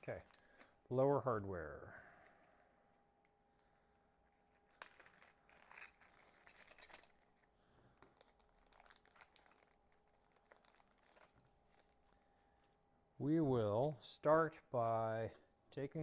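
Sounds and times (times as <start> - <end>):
small parts clicking and tapping: 4.4 - 12.2
plastic bag crinkling: 7.2 - 12.4.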